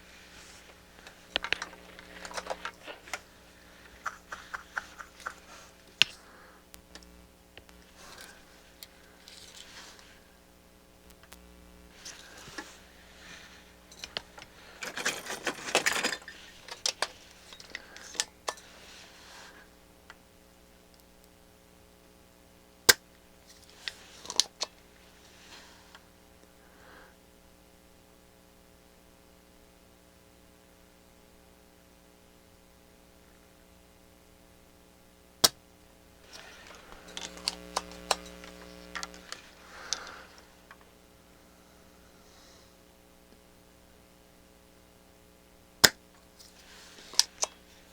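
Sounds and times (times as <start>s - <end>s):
small clicks and taps: 3.8s - 9.7s, 11.1s - 11.5s, 36.3s - 40.9s
rattling and scraping: 14.0s - 17.8s
low hum: 36.0s - 41.2s
sharp clicks and taps: 36.9s - 39.4s.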